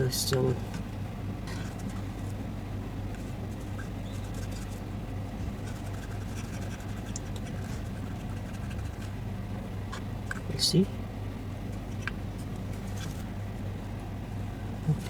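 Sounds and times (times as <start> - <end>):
steady low hum: 0.0 - 15.0
scratching and ticks on circuit board: 3.2 - 4.8, 5.5 - 9.2.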